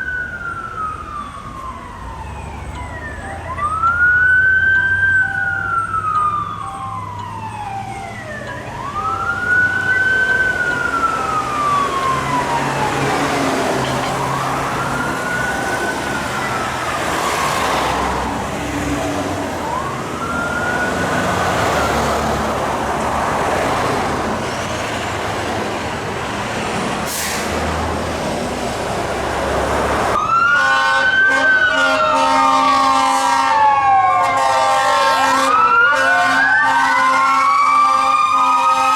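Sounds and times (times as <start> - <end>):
fire engine siren wailing: 0.0 - 38.9
road and engine noise: 0.0 - 38.9
air horn blast: 30.5 - 38.9.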